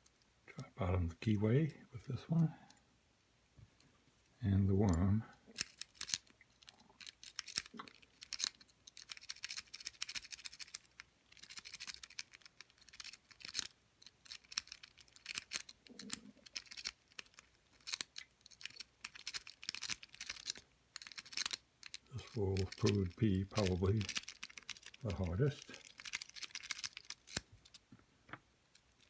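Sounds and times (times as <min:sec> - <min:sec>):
lock pick scratching in padlock: 0:05.6 - 0:27.8.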